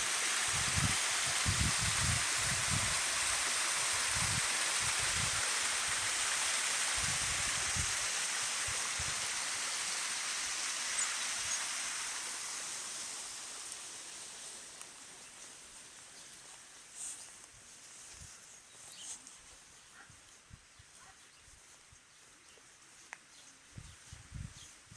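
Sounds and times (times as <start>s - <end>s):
waterfall rushing: 0.0s - 14.1s.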